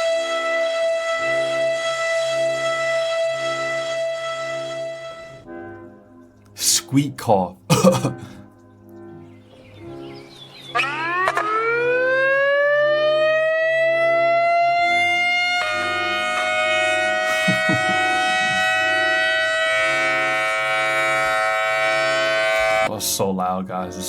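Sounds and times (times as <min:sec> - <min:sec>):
civil defense siren winding up: 0:00.0 - 0:05.9, 0:10.7 - 0:22.9.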